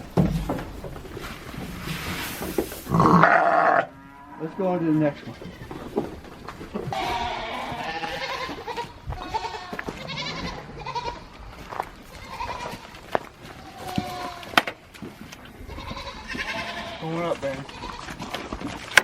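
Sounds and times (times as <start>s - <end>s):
goats bleating: 2.9s - 6.0s, 6.8s - 14.6s, 15.6s - 18.4s.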